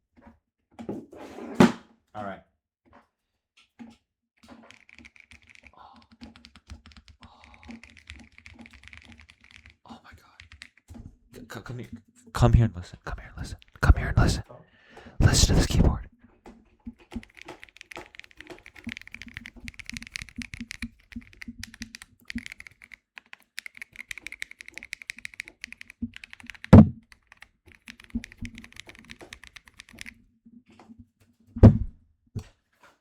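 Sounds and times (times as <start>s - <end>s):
keyboard key clacks: 4.7s - 5.6s, 6.2s - 9.8s, 10.4s - 11.0s, 17.1s - 30.1s
loud thumps: 26.8s - 27.0s, 31.6s - 32.0s.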